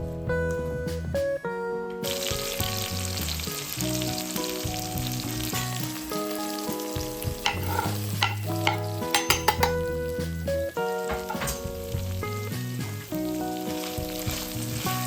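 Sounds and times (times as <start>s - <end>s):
food sizzling in a frying pan: 2.0s - 15.0s
utensil scraping a pan: 7.4s - 9.8s, 11.1s - 11.6s.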